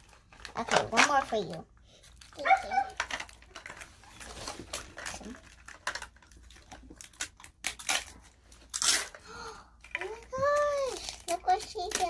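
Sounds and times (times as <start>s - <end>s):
plastic wrapping crinkling and tearing: 0.0s - 12.0s.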